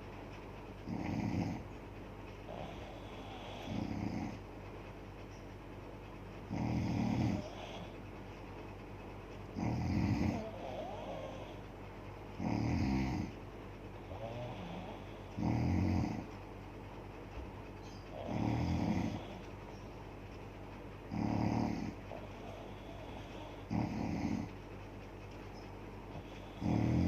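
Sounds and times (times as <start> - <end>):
woman snoring loudly: 26.5 - 27.0.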